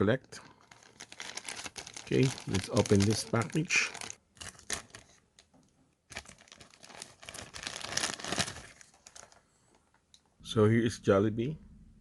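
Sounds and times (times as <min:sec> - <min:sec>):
plastic packaging crinkling and tearing: 0:00.3 - 0:09.8.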